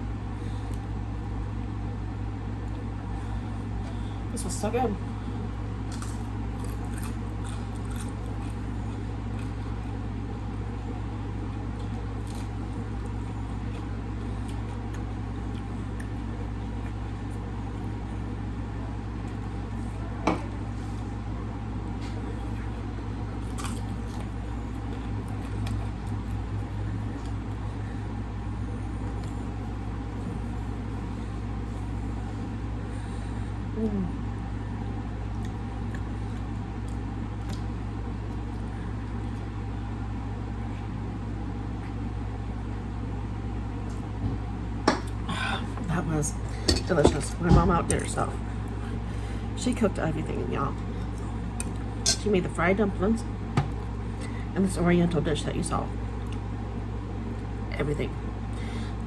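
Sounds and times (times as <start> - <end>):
steady low hum: 0.0 - 59.0
person chewing food: 5.8 - 10.9, 11.5 - 18.6, 22.2 - 32.3.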